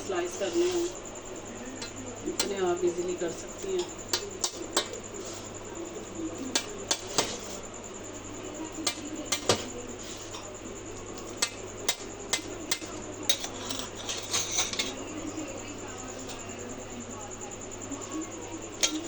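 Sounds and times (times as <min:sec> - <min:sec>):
knife knocking on metal pizza pan: 0:08.8 - 0:10.4.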